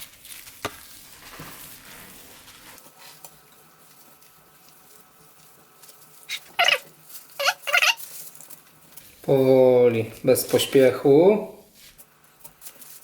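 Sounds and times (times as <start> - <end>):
cloth rubbing on paper: 0.0 - 8.4.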